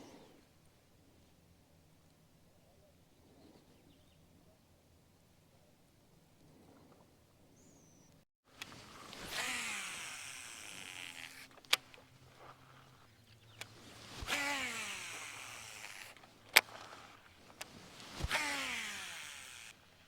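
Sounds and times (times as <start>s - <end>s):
reel engaging click: 8.5s - 19.8s
fishing reel spool whining: 8.6s - 20.0s.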